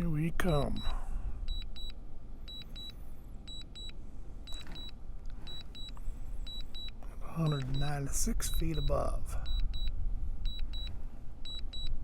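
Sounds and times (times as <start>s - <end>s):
wind rumble on microphone: 9.2s - 12.0s.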